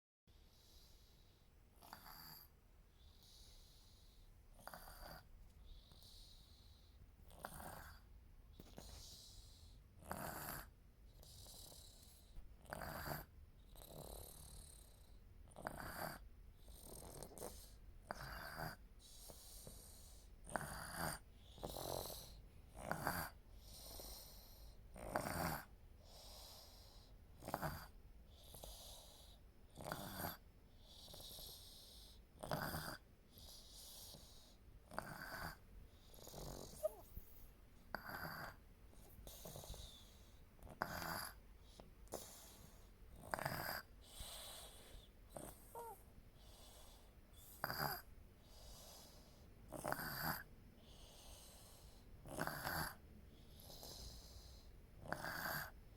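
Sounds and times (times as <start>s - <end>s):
baby snoring quietly: 0.3s - 55.9s.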